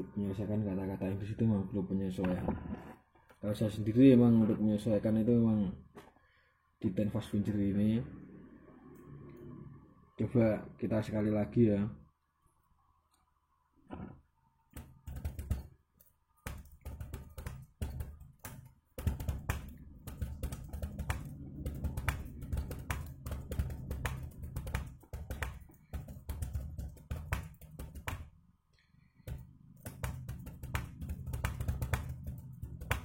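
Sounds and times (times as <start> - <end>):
fast typing on keyboard: 14.8 - 15.8, 16.4 - 28.4, 29.2 - 33.0.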